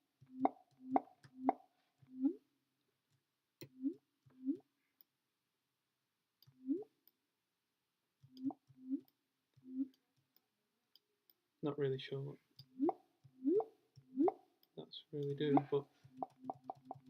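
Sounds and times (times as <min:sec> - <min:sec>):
synthesized water-droplet pops: 0:00.3 - 0:02.4, 0:15.5 - 0:17.0.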